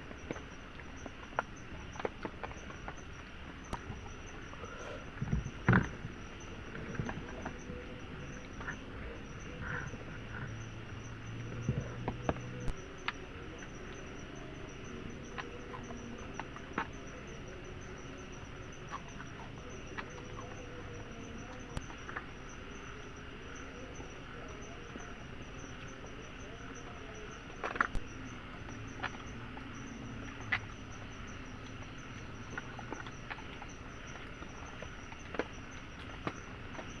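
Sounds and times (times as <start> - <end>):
insects chirring: 0.0 - 37.0.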